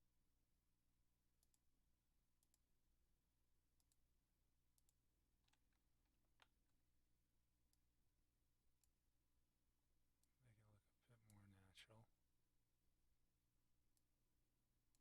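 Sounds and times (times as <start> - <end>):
computer mouse clicks: 1.4 - 1.6, 2.4 - 2.6, 3.8 - 4.0, 4.8 - 6.8.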